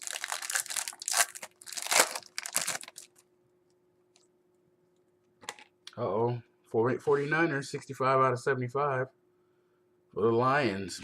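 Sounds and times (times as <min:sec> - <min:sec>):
wrapper crinkling: 0:00.0 - 0:03.2.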